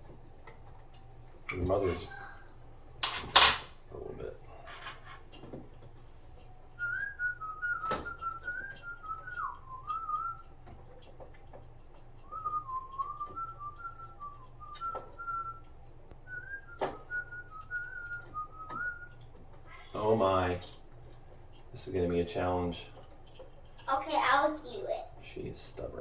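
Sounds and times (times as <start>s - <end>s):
person whistling a tune: 6.7s - 10.7s, 12.2s - 15.7s, 16.3s - 19.2s.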